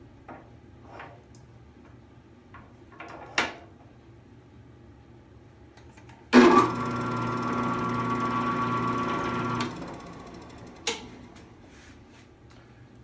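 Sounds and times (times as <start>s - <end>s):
drill press motor hum: 6.4s - 11.6s.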